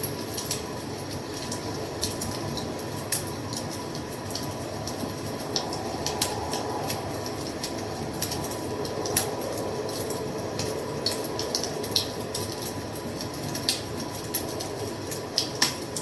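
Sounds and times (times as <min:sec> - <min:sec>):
wood fire crackling: 0:00.0 - 0:16.0.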